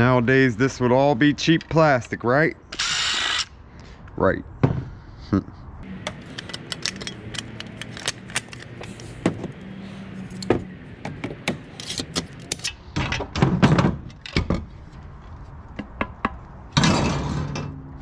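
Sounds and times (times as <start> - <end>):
metal fan parts clanking: 5.8 - 12.8.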